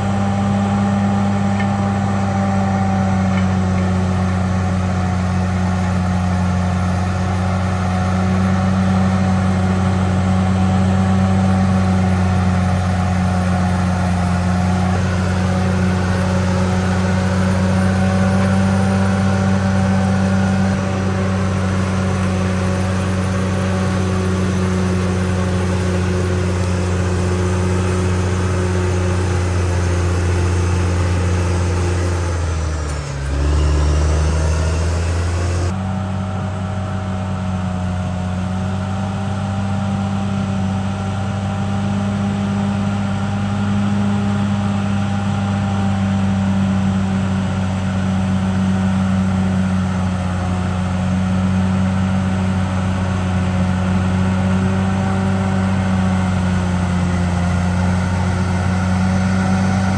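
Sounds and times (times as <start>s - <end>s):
bulldozer diesel engine running: 0.0s - 59.9s.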